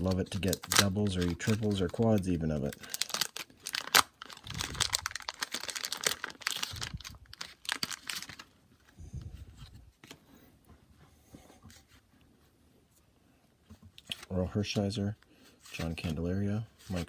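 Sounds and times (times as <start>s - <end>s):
paper wrapper tearing and crinkling: 0.0s - 8.6s
cards being handled: 0.0s - 10.2s.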